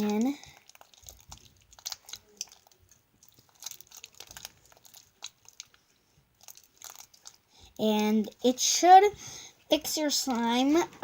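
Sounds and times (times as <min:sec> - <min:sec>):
slime sticky crackles and clicks: 0:00.0 - 0:05.8, 0:06.4 - 0:07.4.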